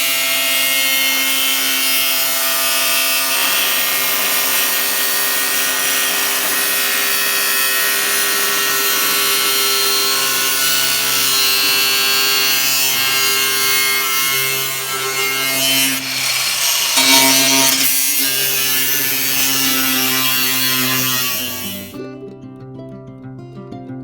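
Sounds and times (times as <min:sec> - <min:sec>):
power tool whining: 0:00.0 - 0:22.0.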